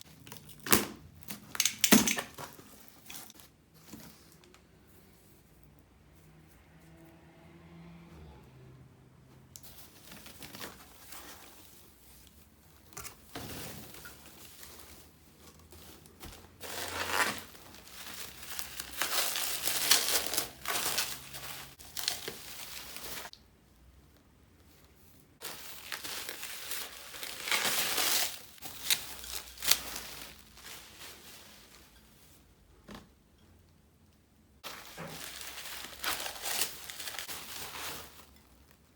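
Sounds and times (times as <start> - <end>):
packaging crinkling and rustling: 0.0 - 4.6, 9.6 - 23.3, 25.4 - 32.0, 34.6 - 38.9.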